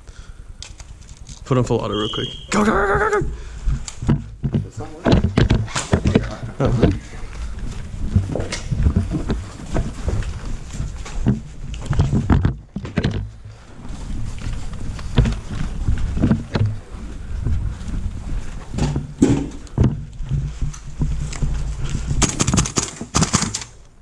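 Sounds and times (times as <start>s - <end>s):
rustling and handling noise: 0.1s - 24.0s
footfalls: 1.8s - 24.0s
knocks and clicks: 3.7s - 7.0s, 10.9s - 13.6s, 15.1s - 16.8s, 22.2s - 23.8s.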